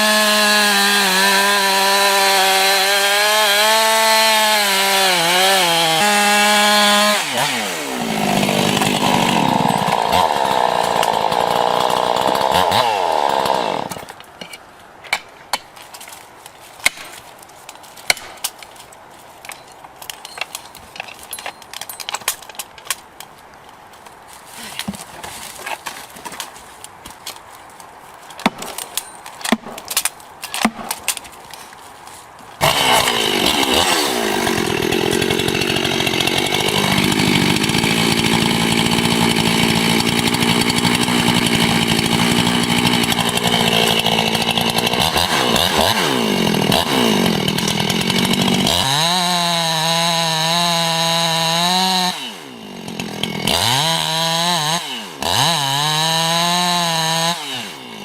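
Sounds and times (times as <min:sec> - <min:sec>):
chainsaw cutting wood: 0:00.0 - 0:14.2, 0:28.4 - 0:31.2, 0:32.6 - 0:58.0.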